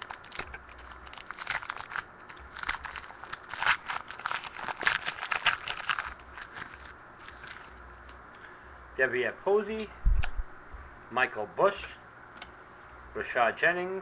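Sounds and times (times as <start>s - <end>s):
plastic wrapper crinkling and tearing: 0.0s - 8.2s.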